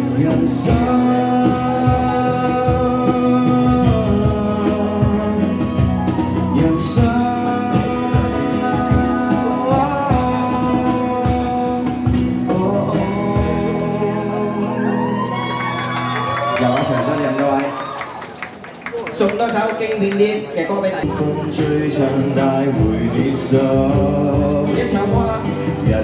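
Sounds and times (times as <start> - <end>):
steady drum beat: 0.0 - 14.0, 21.5 - 26.0
live pop band playing: 0.0 - 17.2, 21.0 - 26.0.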